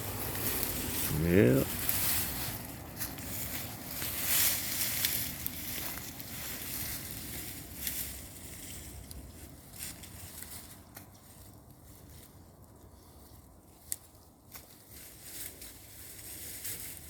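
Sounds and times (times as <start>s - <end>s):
rustling and crunching in mulch: 0.0s - 17.0s.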